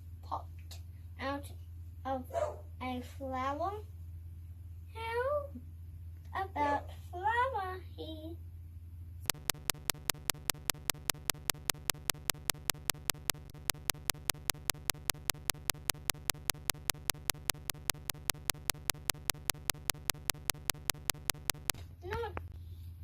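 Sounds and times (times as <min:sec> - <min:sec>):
steady low hum: 0:09.3 - 0:21.7
sharp digital clicks: 0:09.3 - 0:21.8.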